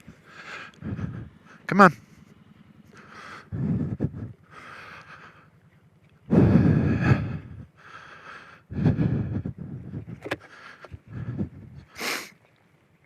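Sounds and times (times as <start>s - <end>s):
heavy breathing: 0.0s - 1.7s, 2.9s - 12.4s
atv engine revving: 0.0s - 5.9s.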